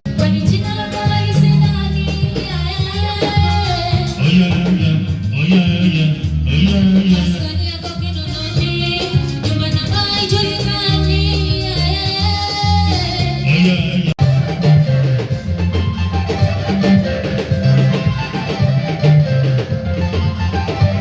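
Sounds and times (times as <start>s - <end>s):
drums and guitar: 0.0s - 21.0s
song with sung vocal: 0.1s - 14.2s.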